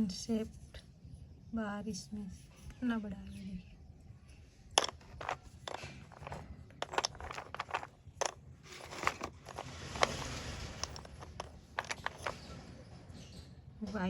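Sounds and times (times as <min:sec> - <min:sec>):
pencil crunching: 0:04.8 - 0:12.4.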